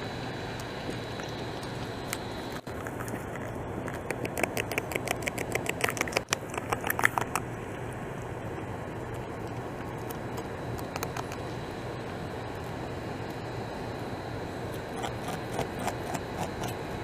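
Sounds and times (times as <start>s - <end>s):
low background hum: 0.0s - 17.0s
beaver gnawing bark: 0.6s - 7.5s, 9.4s - 11.5s, 14.7s - 16.9s.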